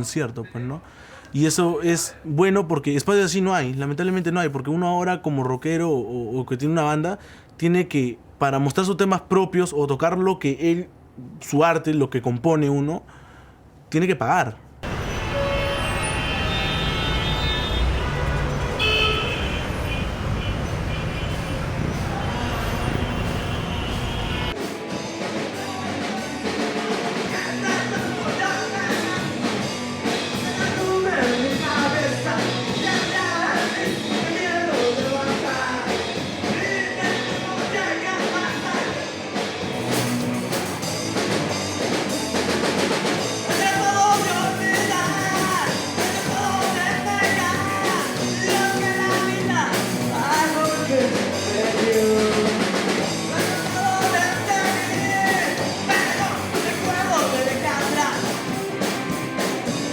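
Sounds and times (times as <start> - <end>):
rock band playing: 14.8 - 19.6, 21.6 - 59.9
drums beating: 17.6 - 59.9
person singing: 25.4 - 29.4, 43.5 - 58.3.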